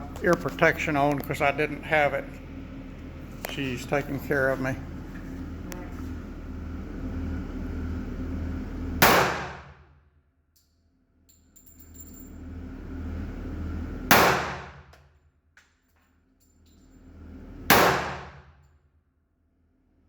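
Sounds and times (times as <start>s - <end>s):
steady low hum: 0.0s - 20.0s
handgun shots: 9.0s - 9.6s, 14.1s - 14.7s, 17.7s - 18.3s.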